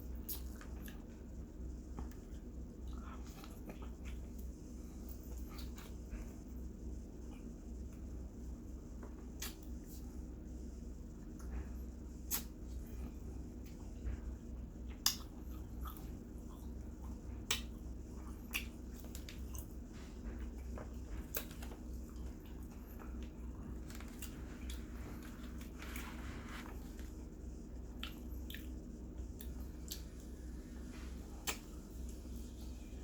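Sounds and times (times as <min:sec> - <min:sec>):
steady low hum: 0:00.0 - 0:33.0
person chewing: 0:01.9 - 0:06.4, 0:14.8 - 0:27.2, 0:27.8 - 0:30.3.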